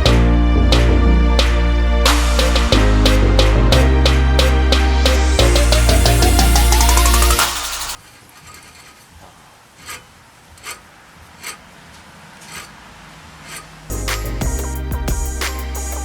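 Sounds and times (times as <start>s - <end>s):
background music: 0.0s - 8.0s, 13.9s - 16.0s
rasping scraping strokes: 4.7s - 14.4s.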